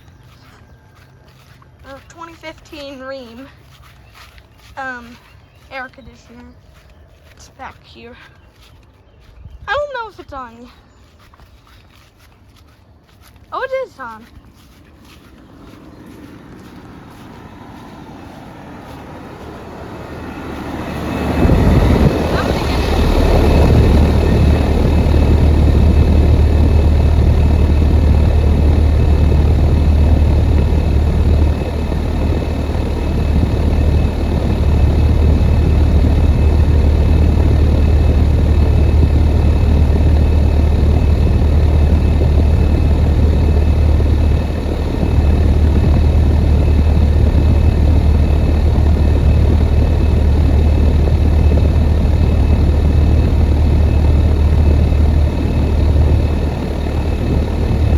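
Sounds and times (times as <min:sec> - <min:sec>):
condenser fan rushing: 0:15.3 - 0:57.9
air conditioner unit humming: 0:15.7 - 0:57.9.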